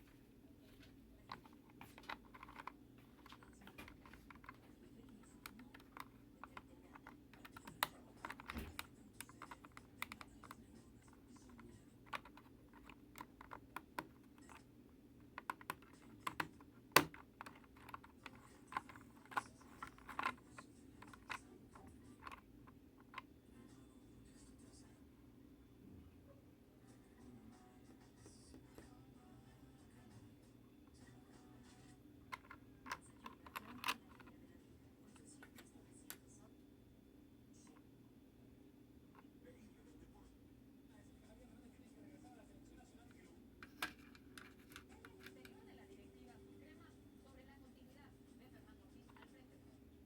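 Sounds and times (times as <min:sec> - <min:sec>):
small parts clicking and tapping: 0:01.2 - 0:10.6, 0:11.3 - 0:14.7, 0:15.3 - 0:23.2, 0:32.3 - 0:34.3.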